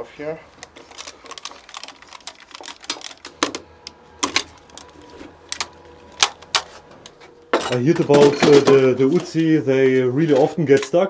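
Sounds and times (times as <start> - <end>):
clicks of firearms being handled: 0.6 - 3.6, 4.2 - 7.4.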